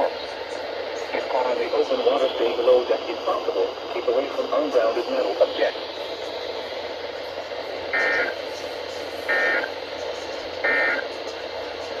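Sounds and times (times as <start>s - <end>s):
radio hiss: 0.0s - 12.0s
warbling digital data tones: 8.0s - 8.4s, 9.3s - 9.7s, 10.6s - 11.0s.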